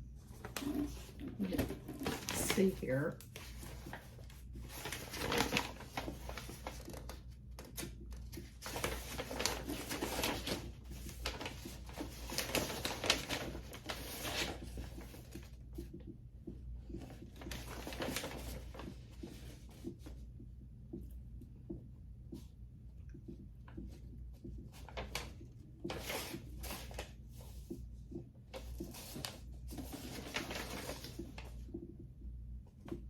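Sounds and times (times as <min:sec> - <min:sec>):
paper and packaging crinkling: 0:00.2 - 0:15.6, 0:17.0 - 0:19.9, 0:28.5 - 0:31.6.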